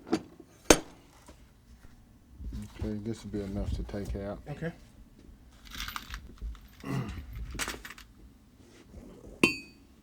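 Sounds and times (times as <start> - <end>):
metal tools scraping and rustling: 5.5 - 8.2.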